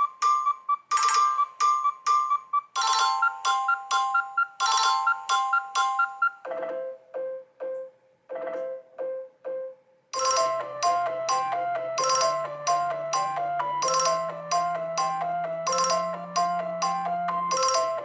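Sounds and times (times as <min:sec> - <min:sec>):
chime-like ringtone melodies: 0:00.0 - 0:18.0
ringtone with bass line: 0:00.0 - 0:18.0.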